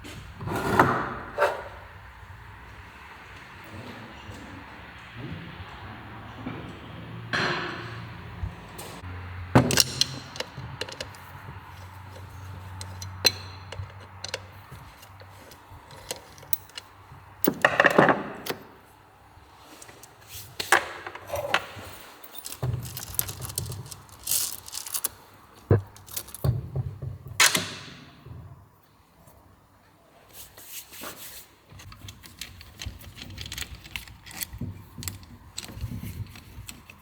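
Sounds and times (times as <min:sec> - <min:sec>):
tools and parts clinking: 0:09.6 - 0:18.7, 0:19.6 - 0:27.8, 0:31.8 - 0:37.0
scraping rattling bursts: 0:22.4 - 0:25.2.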